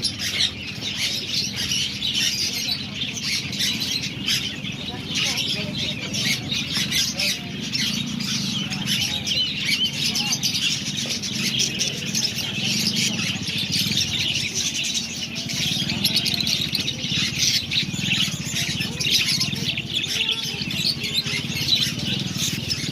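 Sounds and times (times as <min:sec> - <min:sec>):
birds chirping: 0:00.0 - 0:22.9.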